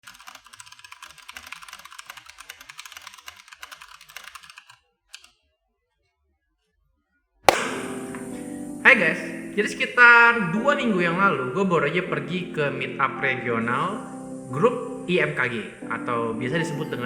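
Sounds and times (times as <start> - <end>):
mechanical keyboard typing: 0.0 - 5.3.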